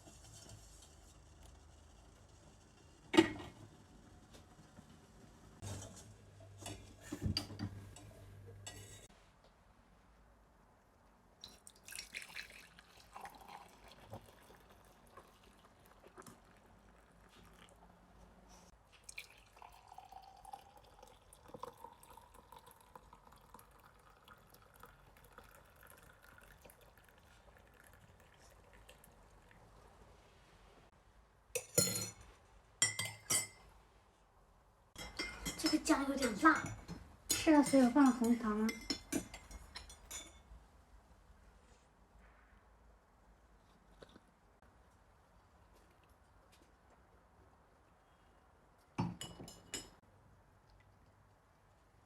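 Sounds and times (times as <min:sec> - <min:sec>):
tea poured into glass: 0:11.4 - 0:17.8, 0:19.0 - 0:29.8
glassware clinking: 0:31.6 - 0:32.2, 0:32.8 - 0:33.6, 0:35.0 - 0:40.4, 0:49.0 - 0:50.0.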